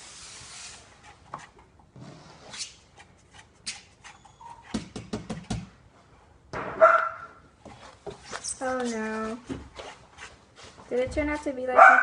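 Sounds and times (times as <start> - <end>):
dog barking: 6.8 - 7.4, 11.8 - 12.0.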